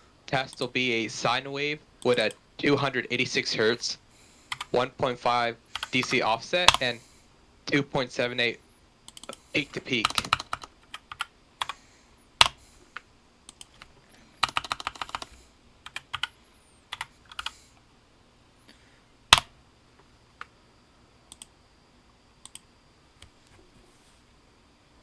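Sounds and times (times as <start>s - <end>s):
keyboard typing: 4.5s - 4.8s, 5.7s - 7.0s, 9.1s - 17.6s.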